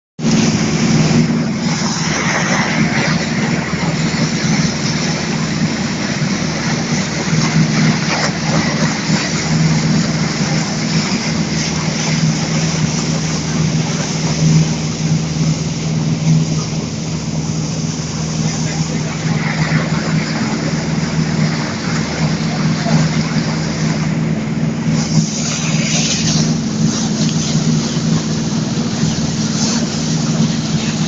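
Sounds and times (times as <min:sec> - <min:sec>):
speedboat engine drone: 0:00.2 - 0:31.0.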